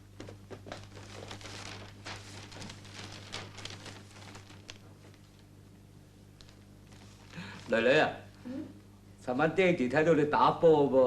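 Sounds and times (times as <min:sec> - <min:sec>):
faint rustles and light clicks: 0:00.2 - 0:07.8.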